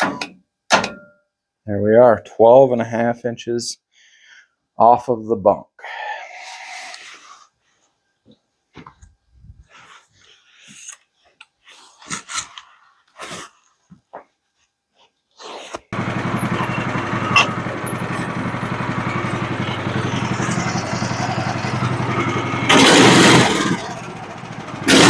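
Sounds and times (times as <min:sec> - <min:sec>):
gasoline engine starting and running: 0:16.0 - 0:25.0.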